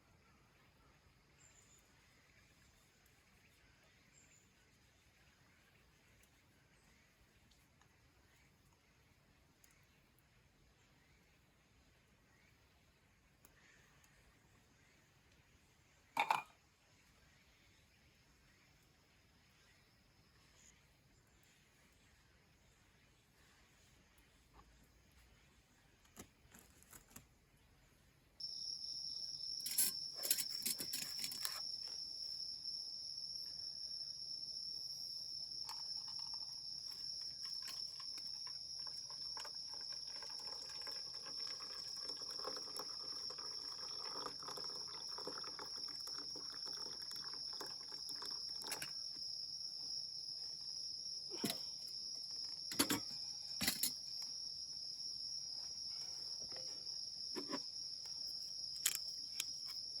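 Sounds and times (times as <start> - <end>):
insects trilling: 28.4 - 60.0.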